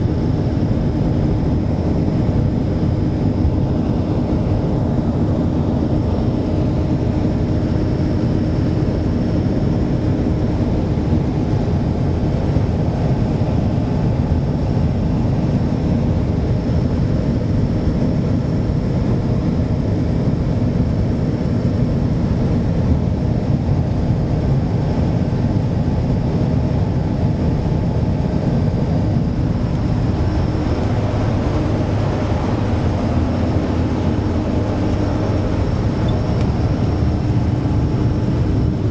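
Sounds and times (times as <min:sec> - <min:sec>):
faint steady whine: 0:00.0 - 0:38.9
ferry engines droning: 0:27.0 - 0:38.9.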